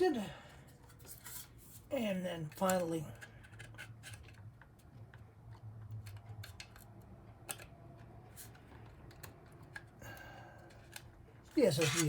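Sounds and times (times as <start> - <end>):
hands handling computer parts: 0.6 - 10.0, 10.6 - 12.0.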